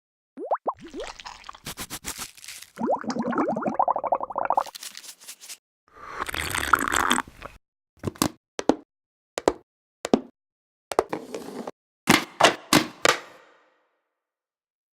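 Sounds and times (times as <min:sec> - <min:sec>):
plastic cup scraping rustle: 0:01.5 - 0:02.8, 0:04.6 - 0:05.6.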